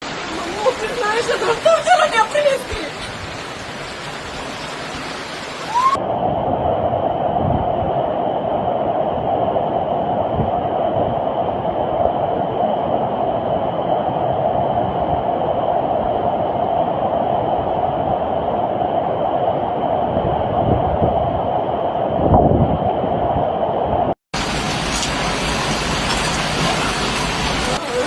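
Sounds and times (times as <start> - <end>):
floodwater rushing: 0.0 - 6.0, 24.4 - 28.0.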